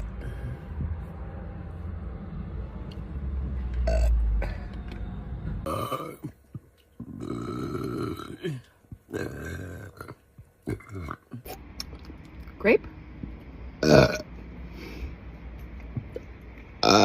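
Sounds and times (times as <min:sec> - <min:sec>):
woman burping: 0:05.7 - 0:06.4, 0:07.1 - 0:11.5, 0:13.8 - 0:14.3, 0:16.8 - 0:17.0.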